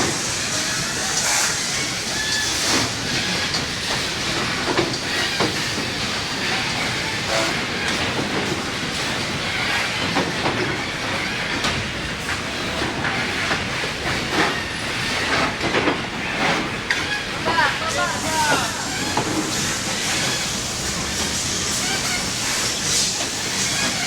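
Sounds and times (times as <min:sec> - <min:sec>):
mechanical hiss and rumble: 0:11.4 - 0:24.0.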